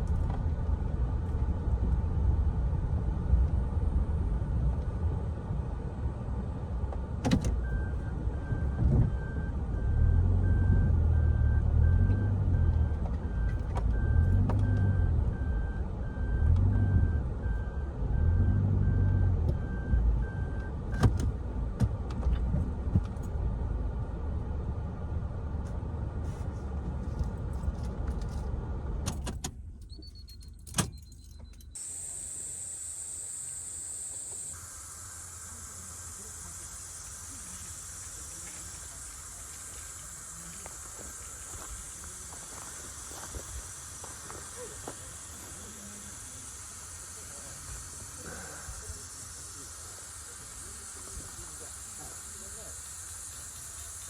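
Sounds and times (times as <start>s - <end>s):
car engine running: 0.0s - 54.0s
repeating beep: 29.9s - 31.8s
steady high hiss: 31.8s - 54.0s.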